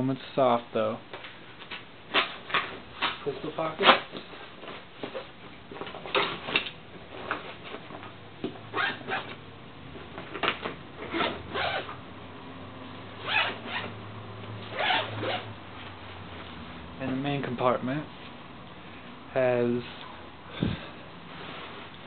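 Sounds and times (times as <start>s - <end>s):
zipper rasping open: 8.7s - 9.4s, 11.0s - 11.9s, 13.2s - 13.9s, 14.7s - 15.5s.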